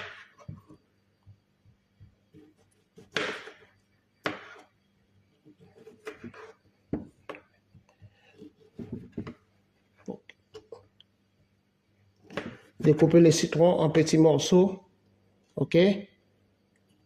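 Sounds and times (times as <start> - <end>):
knife cutting on cutting board: 5.7 - 6.6.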